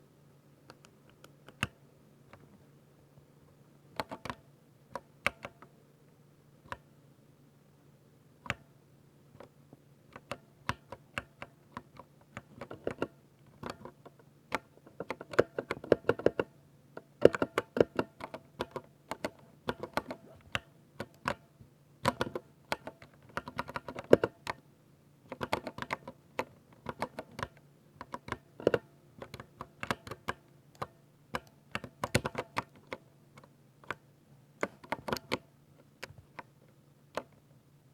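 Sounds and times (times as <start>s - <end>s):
typing on mechanical keyboard: 10.2s - 16.5s, 17.2s - 24.6s, 25.3s - 33.0s.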